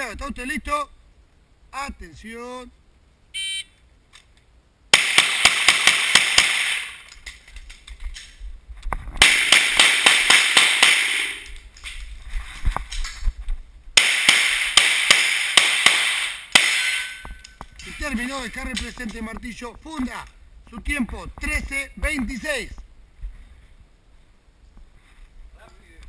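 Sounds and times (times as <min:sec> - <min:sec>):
pistol shots: 0:04.9 - 0:07.0, 0:09.2 - 0:11.4, 0:14.0 - 0:17.2.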